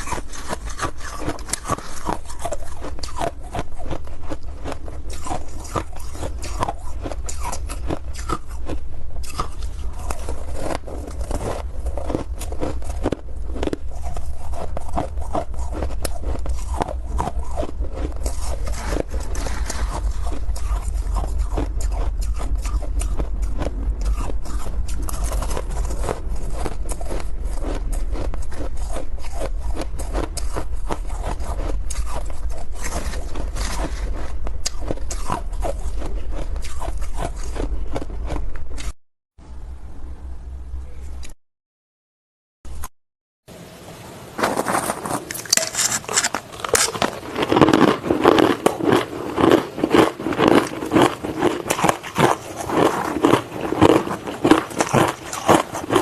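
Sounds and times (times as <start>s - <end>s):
ice being chewed: 0.0s - 39.0s, 44.6s - 56.0s
steady low rumble: 2.6s - 41.4s.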